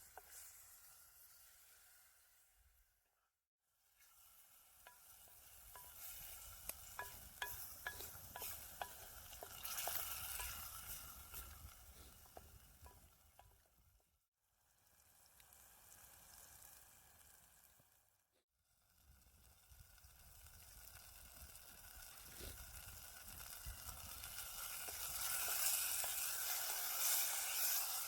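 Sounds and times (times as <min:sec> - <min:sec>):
food sizzling in a pan: 0:00.0 - 0:02.9, 0:03.8 - 0:13.8, 0:14.6 - 0:18.1, 0:18.8 - 0:28.0
spoon clicking against a pan: 0:05.7 - 0:10.8.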